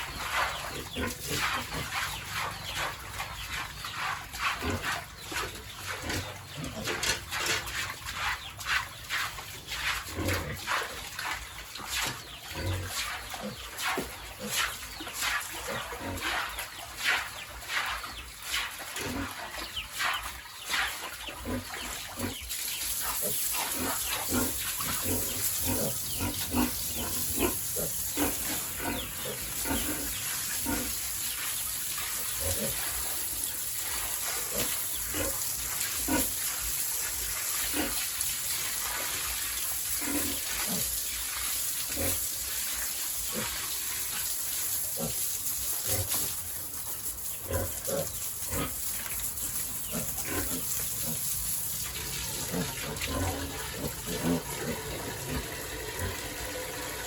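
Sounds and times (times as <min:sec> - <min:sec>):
pigs grunting and squealing: 0:00.2 - 0:02.8, 0:03.8 - 0:07.7, 0:10.0 - 0:11.2, 0:12.4 - 0:16.6, 0:19.0 - 0:19.4, 0:20.8 - 0:31.2, 0:32.2 - 0:33.2, 0:33.8 - 0:36.5, 0:37.6 - 0:38.1, 0:39.9 - 0:41.0, 0:41.9 - 0:42.3, 0:43.2 - 0:43.8, 0:44.7 - 0:46.4, 0:47.4 - 0:57.0.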